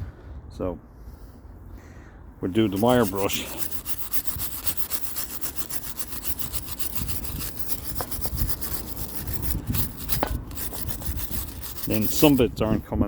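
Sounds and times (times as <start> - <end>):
wire brush scrubbing iron: 2.6 - 12.6.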